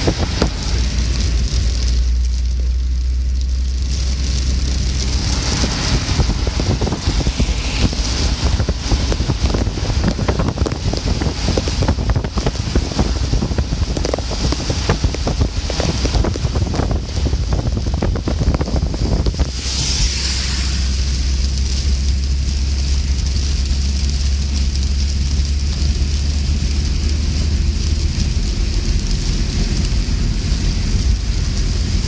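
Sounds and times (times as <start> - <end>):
wind buffeting microphone: 0.0 - 2.0, 4.5 - 22.6
heavy rain: 0.0 - 32.0.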